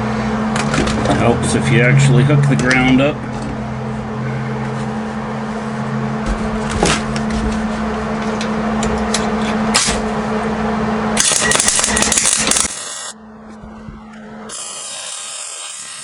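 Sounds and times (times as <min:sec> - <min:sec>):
electric welder humming: 0:00.0 - 0:16.0
welding arc crackling: 0:11.2 - 0:13.2, 0:14.5 - 0:16.0.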